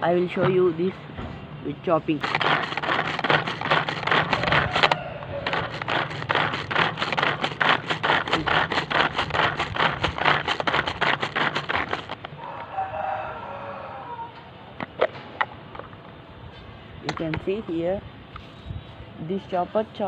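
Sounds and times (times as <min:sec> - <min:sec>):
pull-cord chopper chopping onion: 0:02.2 - 0:12.3.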